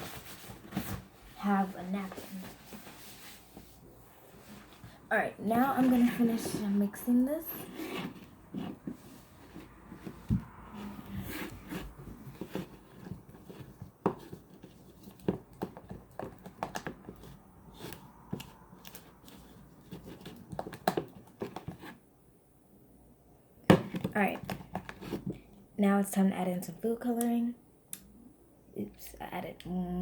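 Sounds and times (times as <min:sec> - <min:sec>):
spatula scraping container: 0:05.6 - 0:13.7
spatula stirring thick slime: 0:05.6 - 0:20.8.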